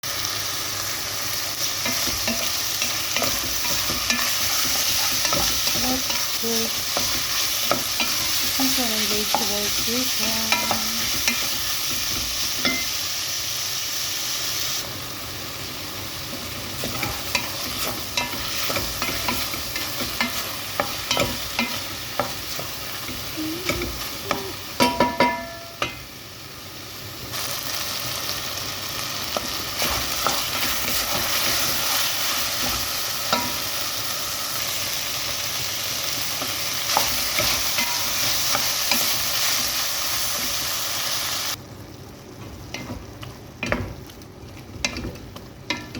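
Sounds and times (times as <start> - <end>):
food sizzling in a pan: 0.0 - 45.9
loud ringing knocks on pan: 24.8 - 25.9.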